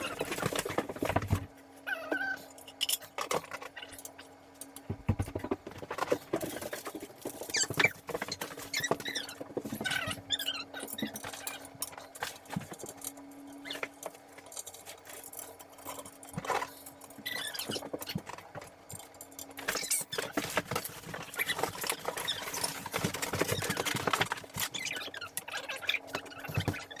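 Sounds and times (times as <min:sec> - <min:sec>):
packaging rustling and clicking: 0:19.6 - 0:27.0.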